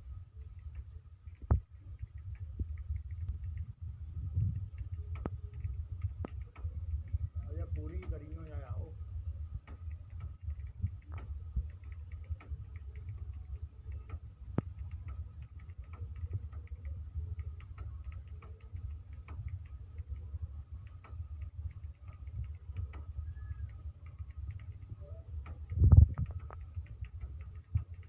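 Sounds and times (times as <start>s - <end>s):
steady low hum: 0.0s - 28.0s
keyboard typing clicks: 0.5s - 3.7s, 4.4s - 8.9s, 9.5s - 28.0s.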